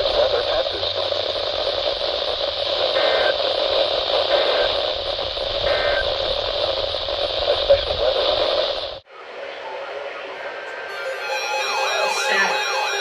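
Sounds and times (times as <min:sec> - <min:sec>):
faint two-tone data bursts: 0:00.0 - 0:09.0
radio static hiss: 0:00.0 - 0:10.8.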